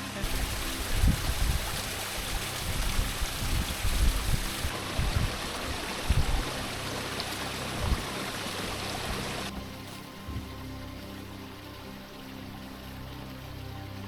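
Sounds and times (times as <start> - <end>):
flowing water rushing: 0.0 - 14.0
low rumbles on microphone: 0.2 - 6.8, 7.7 - 8.2.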